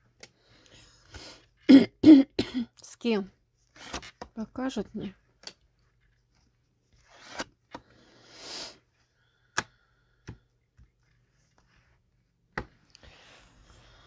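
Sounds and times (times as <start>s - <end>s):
cards sliding rustles: 3.6s - 4.4s, 5.3s - 8.0s.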